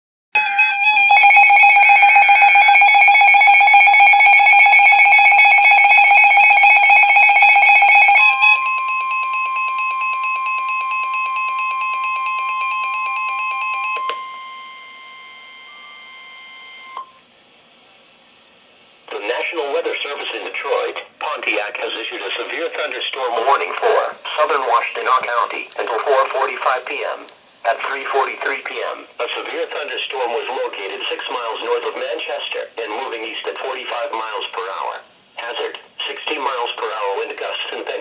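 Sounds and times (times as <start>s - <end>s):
rapidly pulsing alarm tone: 0.4s - 17.2s
steady alarm tone: 0.4s - 17.2s.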